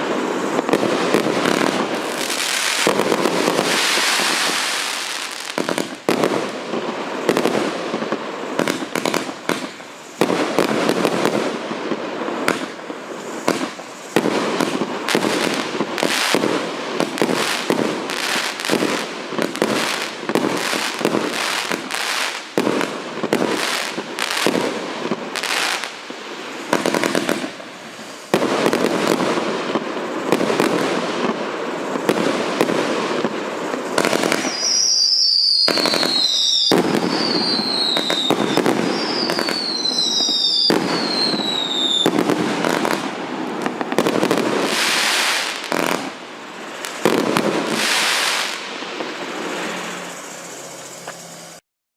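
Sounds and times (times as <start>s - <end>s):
fireworks bangs and crackling: 0.0s - 51.6s
firework whistle falling in pitch: 34.3s - 42.9s.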